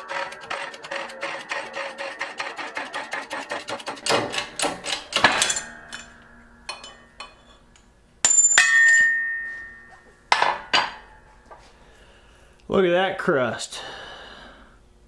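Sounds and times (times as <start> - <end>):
sharp metal clang: 4.0 - 7.6, 8.2 - 11.3
metal clanking and ringing: 4.0 - 11.3.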